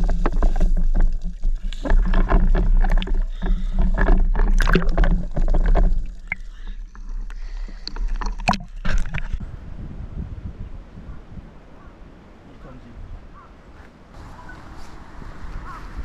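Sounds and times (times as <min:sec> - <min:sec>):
water splashing and sloshing: 0:00.0 - 0:09.5.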